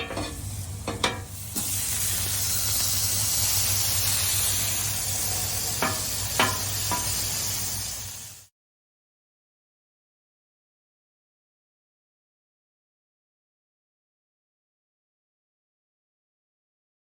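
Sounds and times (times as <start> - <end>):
cheese sizzling on a griddle: 0.0 - 8.5.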